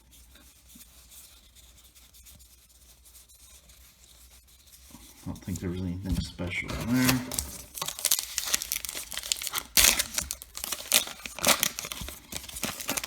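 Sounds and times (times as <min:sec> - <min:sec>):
wrapper tearing and crinkling: 0:06.8 - 0:13.0.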